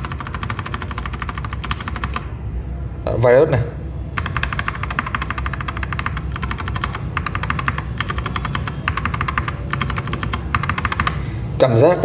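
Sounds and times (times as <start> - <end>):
mechanical keyboard clacks: 0.0 - 2.3, 4.2 - 11.2.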